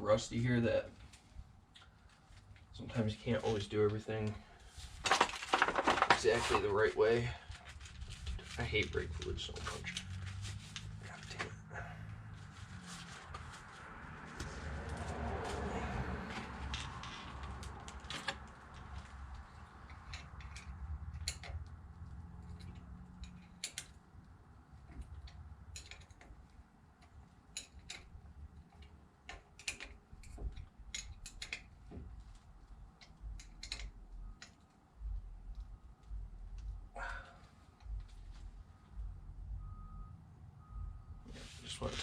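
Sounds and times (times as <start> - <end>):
low background rumble: 6.2 - 41.3
metallic clicks of hand tools: 27.5 - 31.7, 33.0 - 34.7.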